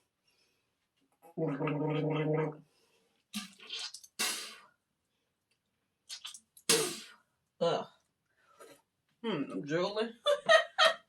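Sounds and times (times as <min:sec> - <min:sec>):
person gargling: 0:01.3 - 0:02.6
person spitting: 0:03.4 - 0:04.7, 0:06.1 - 0:07.2.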